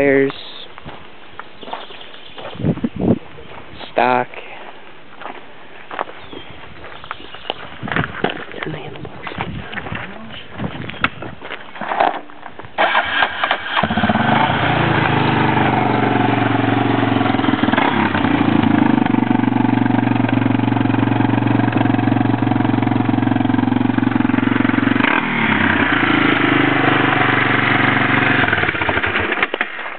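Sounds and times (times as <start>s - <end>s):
engine starting and idling: 12.8s - 16.6s, 25.1s - 29.7s.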